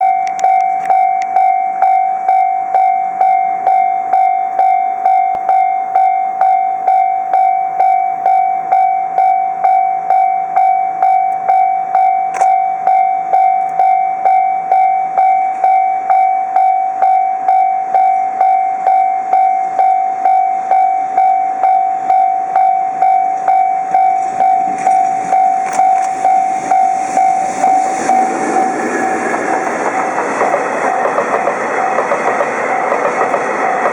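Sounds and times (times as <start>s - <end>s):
level crossing warning bell: 0.0s - 33.9s
freight train rumble: 23.9s - 33.9s.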